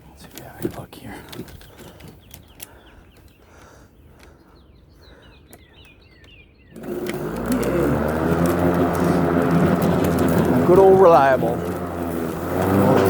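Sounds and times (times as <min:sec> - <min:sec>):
birds chirping: 0:00.0 - 0:13.0
electric lawn mower running: 0:06.7 - 0:13.0.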